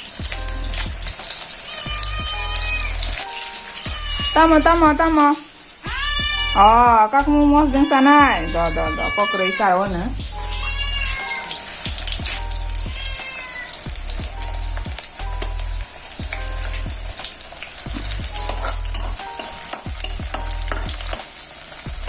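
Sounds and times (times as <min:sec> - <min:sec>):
food sizzling in a pan: 0:00.0 - 0:22.0
spatula scraping and tapping pan: 0:15.2 - 0:15.6, 0:16.3 - 0:21.4.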